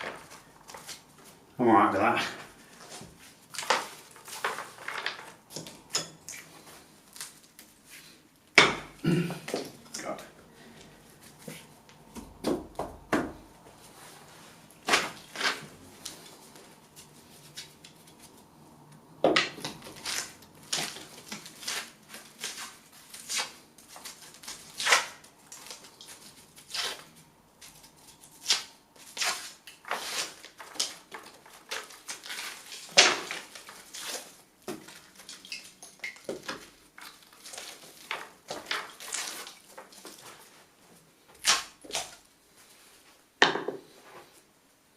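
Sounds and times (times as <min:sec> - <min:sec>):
sharp wood crack: 0:19.2 - 0:26.1, 0:28.3 - 0:35.4, 0:41.4 - 0:42.2
wood knocking and scraping: 0:43.4 - 0:43.9.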